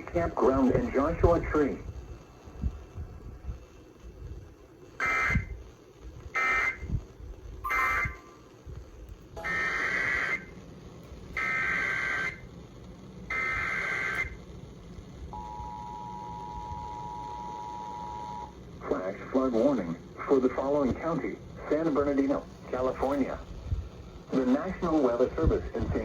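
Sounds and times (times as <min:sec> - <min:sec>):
buzzy data bursts: 0:00.0 - 0:26.0
two-tone attention signal: 0:07.7 - 0:08.2, 0:09.4 - 0:10.4, 0:15.4 - 0:18.5.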